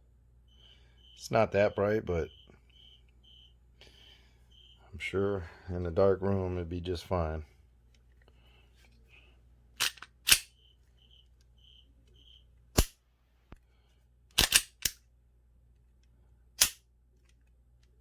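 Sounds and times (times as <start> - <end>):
pistol slide and trigger clicks: 9.8 - 10.5, 14.3 - 15.0, 16.6 - 17.4.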